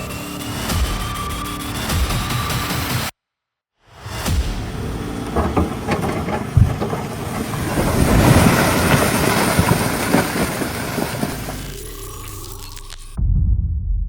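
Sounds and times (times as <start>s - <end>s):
heavy machinery engine and tracks: 4.1s - 12.0s
metal clanks and knocks: 4.5s - 11.6s.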